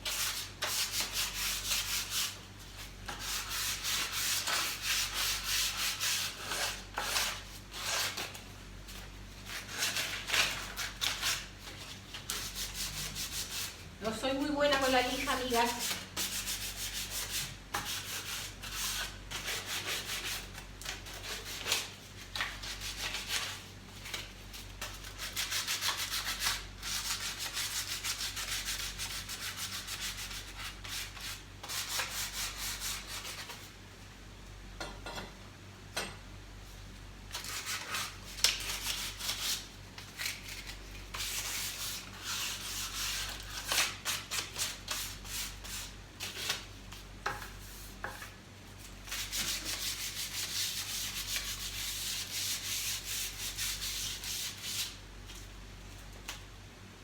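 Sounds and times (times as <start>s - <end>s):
sandpaper scraping varnish: 0.0s - 8.3s, 15.2s - 33.6s, 37.4s - 48.3s, 49.1s - 55.0s.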